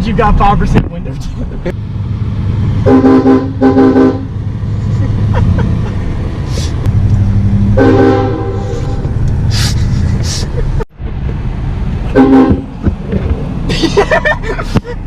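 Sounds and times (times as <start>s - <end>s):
engine and road rumble: 0.0s - 15.0s
train horn chirps: 7.8s - 9.0s.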